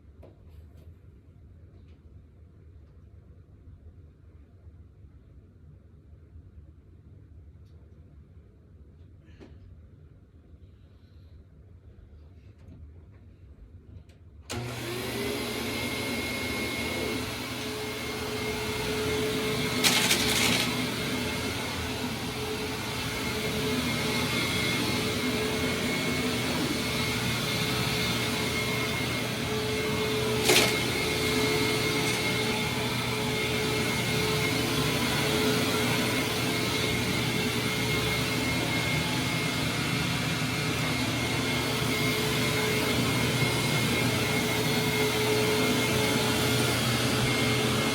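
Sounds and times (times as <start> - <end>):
vacuum cleaner running: 14.5 - 47.9.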